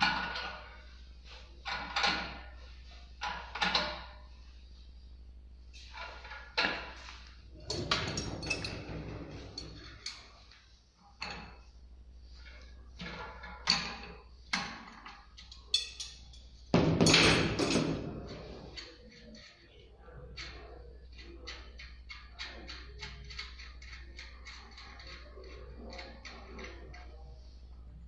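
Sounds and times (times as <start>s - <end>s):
metal clatter: 5.8s - 10.4s, 12.4s - 19.6s
metallic knocks and clanks: 6.0s - 10.3s, 13.0s - 19.5s.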